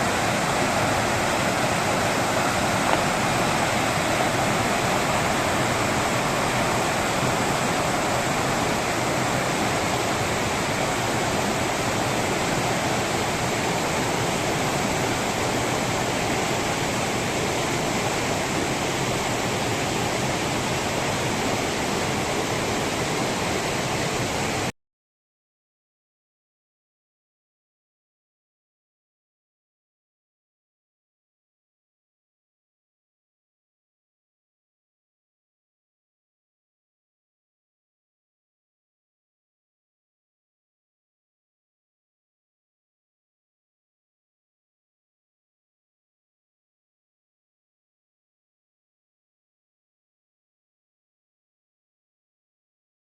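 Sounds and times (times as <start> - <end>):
fast-flowing water rushing: 0.0 - 24.7.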